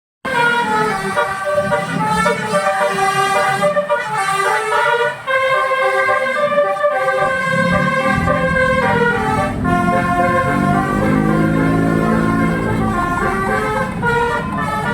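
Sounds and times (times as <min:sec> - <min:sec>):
musical bus horn melody: 0:00.2 - 0:14.9
low rumble: 0:07.6 - 0:14.5.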